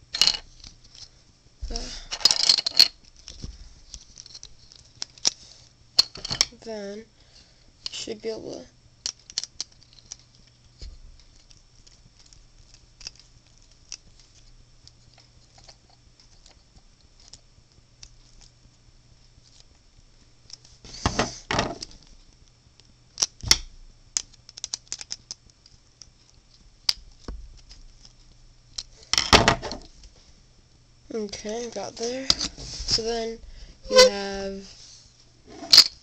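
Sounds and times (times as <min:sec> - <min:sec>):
plastic puzzle parts clicking: 0:09.0 - 0:10.5, 0:24.2 - 0:28.9.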